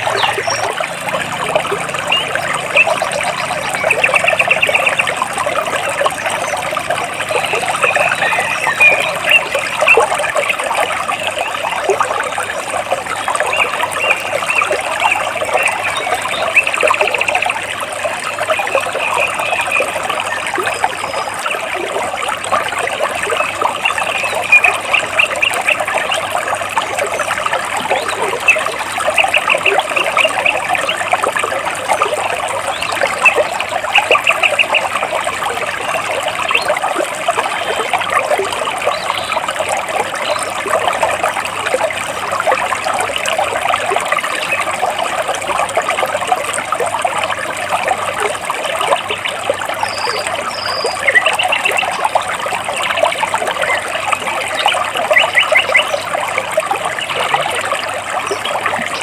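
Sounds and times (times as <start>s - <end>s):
birds chirping trills: 0.0s - 12.5s, 13.2s - 31.2s, 31.9s - 36.8s, 49.8s - 56.1s
stream water splashing over rocks: 0.0s - 59.0s.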